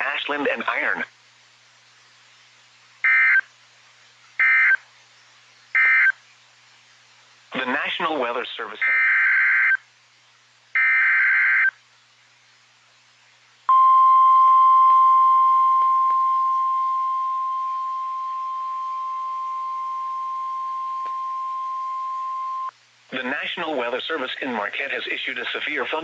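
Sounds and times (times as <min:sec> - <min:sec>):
single-pitch warning alarm tone: 0:13.7 - 0:22.7.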